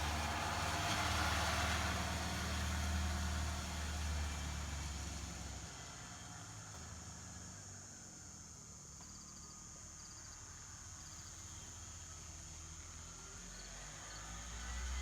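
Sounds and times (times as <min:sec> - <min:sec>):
insects chirping: 0:08.4 - 0:14.5.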